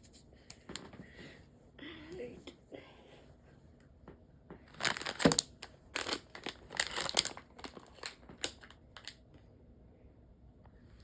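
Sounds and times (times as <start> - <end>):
packaging crackling in hands: 4.7 - 9.2.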